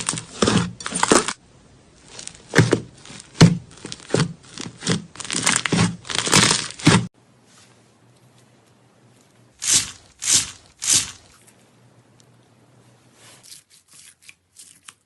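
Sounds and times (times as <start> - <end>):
slime squishing and crackling: 2.0 - 7.1.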